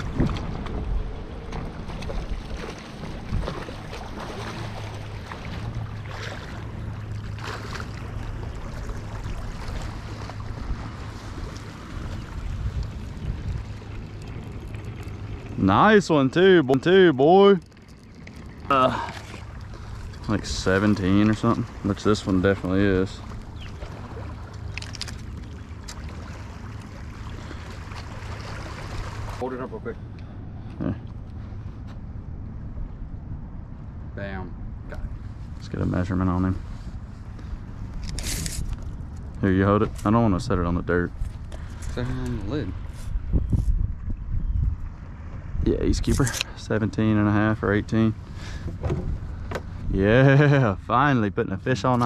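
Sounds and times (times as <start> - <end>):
wind buffeting microphone: 0.0 - 3.9, 8.1 - 16.0, 40.2 - 46.4, 47.9 - 50.2
low rumble: 0.0 - 51.0
steady low hum: 0.0 - 52.0
water noise: 0.0 - 52.0
wind: 0.0 - 52.0.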